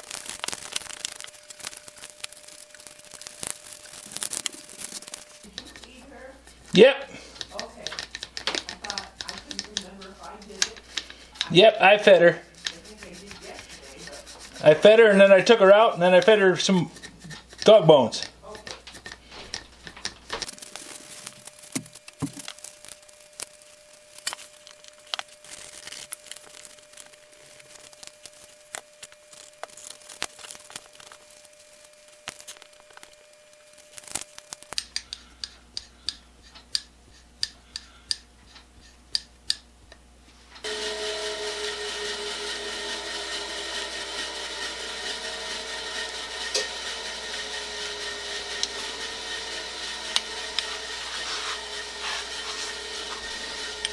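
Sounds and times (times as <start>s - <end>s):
tool clicks and taps: 7.4s - 11.5s, 16.8s - 20.5s, 34.6s - 40.0s
whirring machine: 40.6s - 53.9s.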